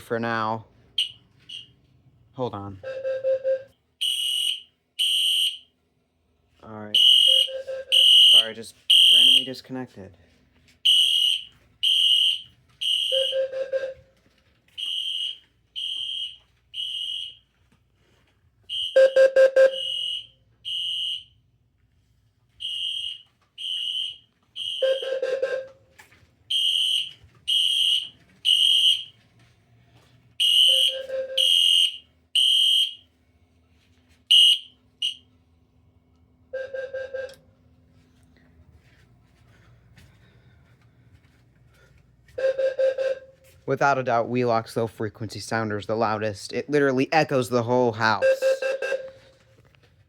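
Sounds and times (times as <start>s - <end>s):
high-pitched fire alarm horn beeps: 1.0s - 1.8s, 2.6s - 5.7s, 6.9s - 9.6s, 10.8s - 17.7s, 18.6s - 21.5s, 22.5s - 29.2s, 30.4s - 33.2s, 34.2s - 35.4s, 36.5s - 37.5s, 42.3s - 43.6s, 48.0s - 49.6s
low fire alarm beeps: 1.0s - 5.7s, 6.9s - 9.7s, 10.8s - 21.6s, 22.5s - 33.2s, 34.3s - 35.4s, 36.5s - 37.6s, 40.7s - 44.4s, 48.0s - 49.8s.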